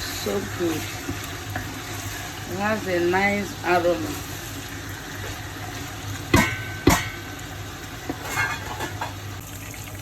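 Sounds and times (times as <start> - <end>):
chicken sizzling in a pot: 0.0 - 10.0
spoon knocking on a pot: 6.3 - 7.2.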